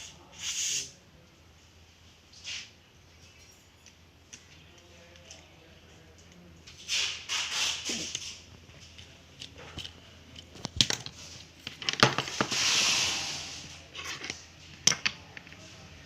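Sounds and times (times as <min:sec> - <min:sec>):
clicks and taps of handling parts: 0:14.1 - 0:15.7.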